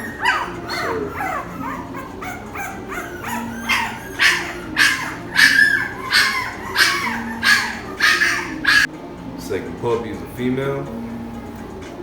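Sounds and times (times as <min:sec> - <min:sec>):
puppy yelping: 0:00.0 - 0:08.9.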